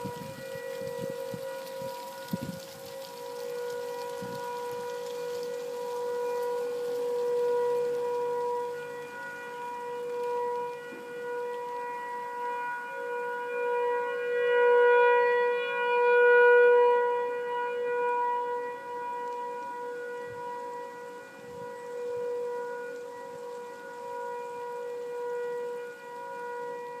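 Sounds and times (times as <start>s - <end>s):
warning siren steady tone: 0.0s - 27.0s.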